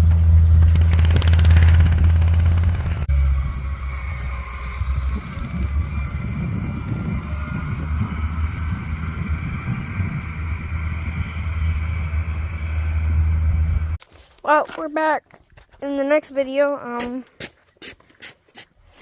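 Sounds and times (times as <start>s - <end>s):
vehicle engine rumbling: 0.0s - 17.2s
wind buffeting microphone: 1.1s - 14.0s.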